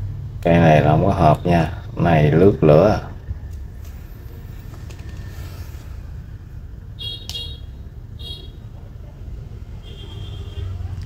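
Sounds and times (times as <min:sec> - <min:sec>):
street traffic rumble: 0:00.0 - 0:11.0
high-pitched horn toots: 0:07.0 - 0:08.6.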